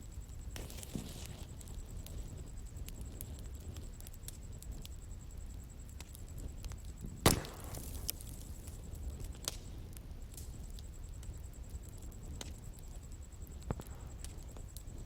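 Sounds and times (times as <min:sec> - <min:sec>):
bonfire crackling: 0:00.0 - 0:15.0
low rumble of burning: 0:00.0 - 0:15.0
sharp pops: 0:07.2 - 0:08.8.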